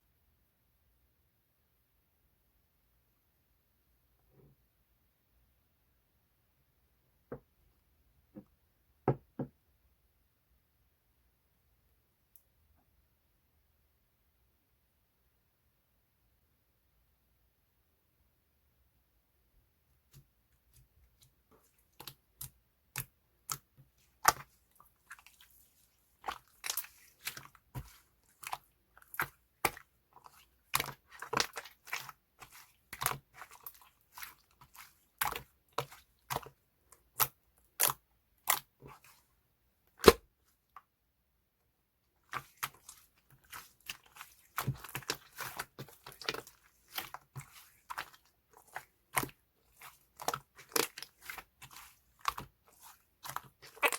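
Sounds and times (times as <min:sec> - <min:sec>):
slime squishing with air pops: 0:39.9 - 0:40.3.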